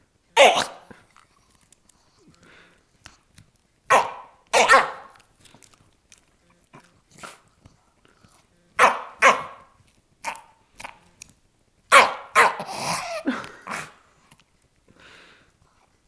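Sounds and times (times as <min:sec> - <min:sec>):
dog barking: 0:00.4 - 0:00.9, 0:03.9 - 0:05.2, 0:08.8 - 0:09.7, 0:11.9 - 0:12.9.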